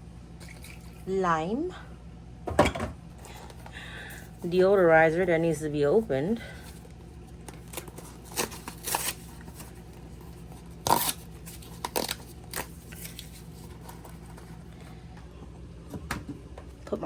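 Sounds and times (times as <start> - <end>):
steady low hum: 0.0 - 17.0
packaging tearing and crinkling: 7.4 - 14.3.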